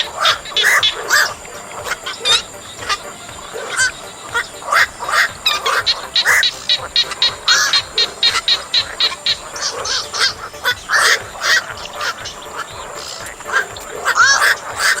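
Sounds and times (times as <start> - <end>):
herons calling: 0.0 - 15.0.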